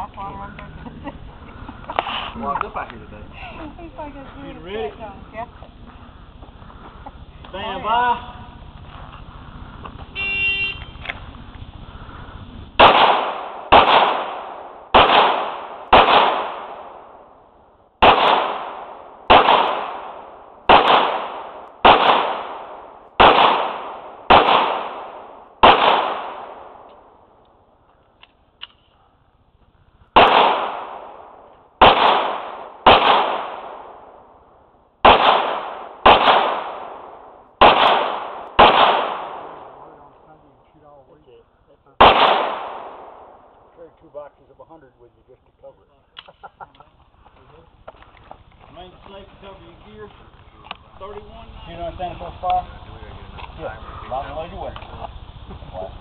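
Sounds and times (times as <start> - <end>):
pistol shots echoing: 12.8 - 17.4, 18.0 - 27.2, 30.2 - 34.3, 35.0 - 40.0, 42.0 - 43.7.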